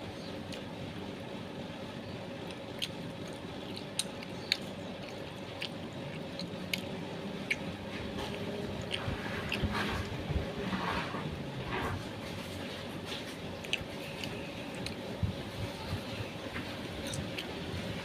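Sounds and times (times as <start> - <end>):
steady background hum: 0.0 - 18.0
close-up chewing: 2.2 - 18.0
wet mouth clicks: 3.7 - 9.9.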